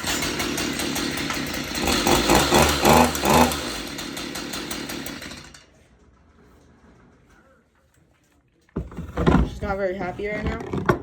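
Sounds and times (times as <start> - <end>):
chainsaw revving unevenly: 0.0 - 5.6.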